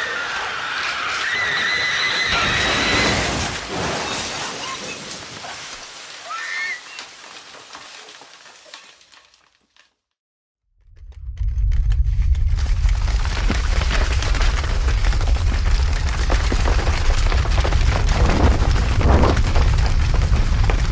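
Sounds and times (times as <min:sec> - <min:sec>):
crackling earthquake rumble: 0:10.7 - 0:20.9
deep rumble and crackling: 0:10.7 - 0:20.9.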